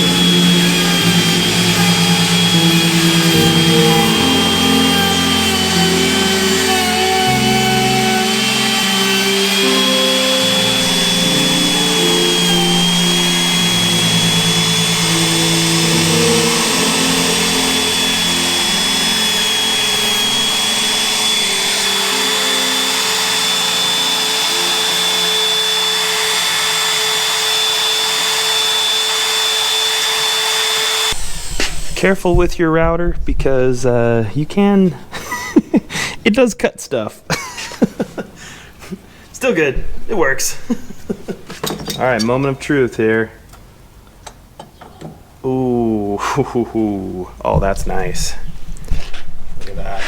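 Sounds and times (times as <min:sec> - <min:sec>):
wood router whining: 0:00.0 - 0:33.0, 0:37.6 - 0:43.7.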